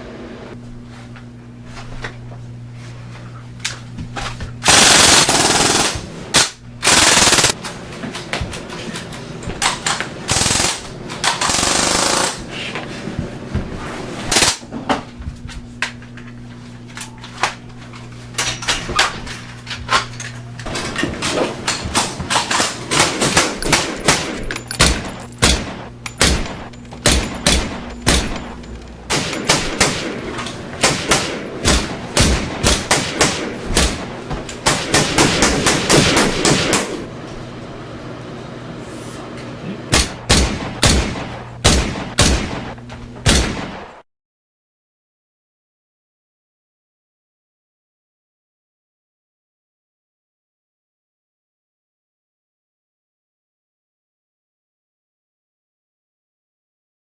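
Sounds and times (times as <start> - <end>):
steady low hum: 0.0 - 44.0
automatic gunfire: 4.6 - 7.6, 10.3 - 12.4, 22.9 - 28.5, 29.1 - 37.0, 39.9 - 42.7.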